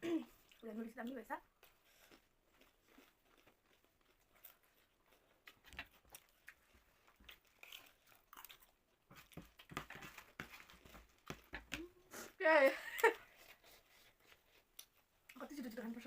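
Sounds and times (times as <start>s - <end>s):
crunching and chewing puffed rice: 0.4s - 11.8s.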